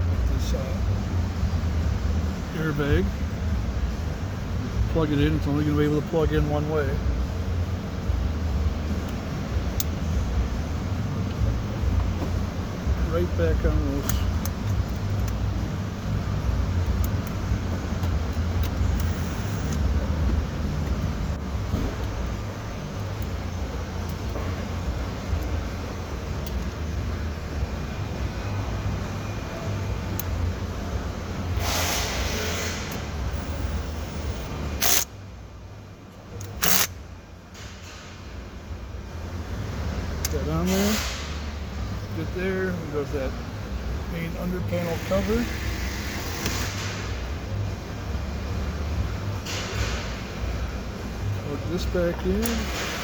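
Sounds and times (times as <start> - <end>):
low steady hum: 0.0 - 31.7, 32.4 - 37.6
low background rumble: 32.4 - 40.6.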